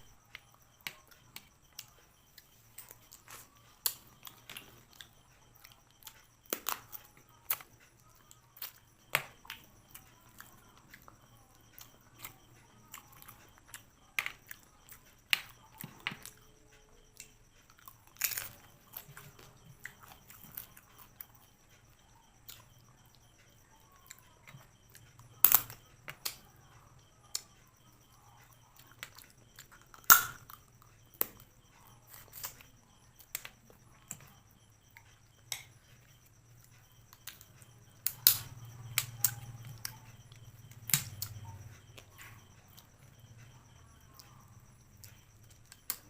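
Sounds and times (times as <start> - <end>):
sharp cracks and snaps: 30.0 - 30.5, 40.8 - 41.4.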